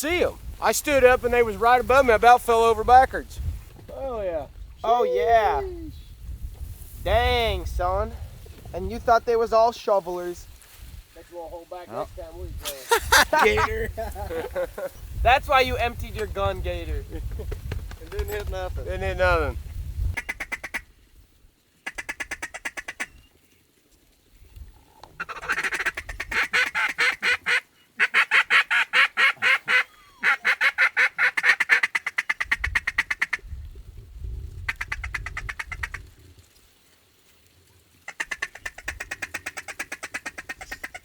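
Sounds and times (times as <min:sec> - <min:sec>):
duck quacking rapidly: 0:25.2 - 0:33.4, 0:38.1 - 0:41.0.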